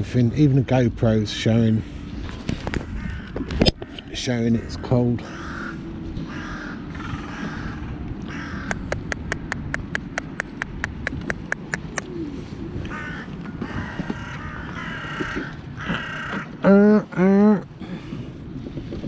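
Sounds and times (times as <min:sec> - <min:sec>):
steady low rumble: 0:00.0 - 0:19.0
crows cawing: 0:02.6 - 0:04.1, 0:04.9 - 0:09.4, 0:12.7 - 0:16.8
rapid sharp ticks: 0:08.6 - 0:12.1.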